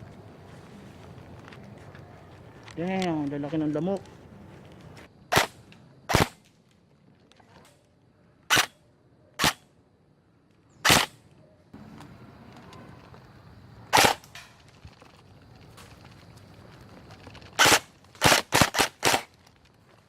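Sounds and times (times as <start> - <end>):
airsoft rifle shots: 5.3 - 6.4, 8.5 - 8.8, 9.4 - 9.6, 10.8 - 11.2, 13.9 - 14.4, 17.6 - 19.3.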